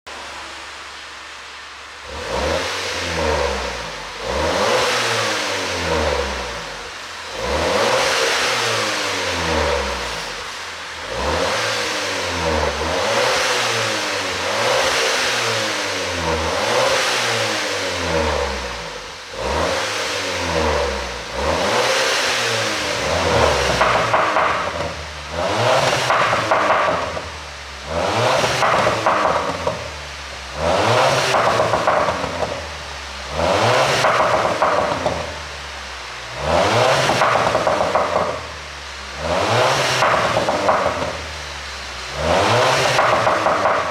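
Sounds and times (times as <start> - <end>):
car engine revving: 0.1 - 43.9
exhaust pops and crackles: 23.0 - 35.9, 36.8 - 43.9.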